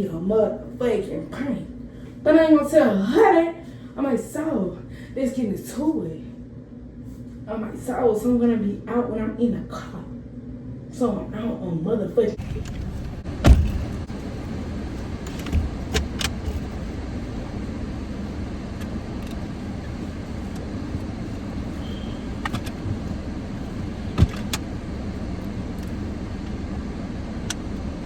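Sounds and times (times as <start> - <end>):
car cabin rumble: 12.4 - 28.0.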